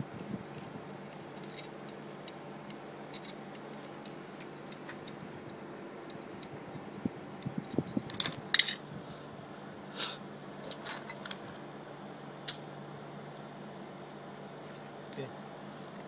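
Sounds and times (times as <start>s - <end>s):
metal parts and tools clinking: 8.1s - 8.9s.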